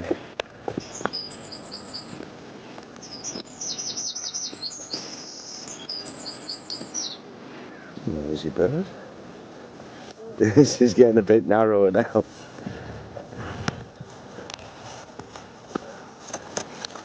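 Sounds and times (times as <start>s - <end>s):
songbird singing trilled phrases: 0.8s - 2.2s, 3.0s - 7.2s.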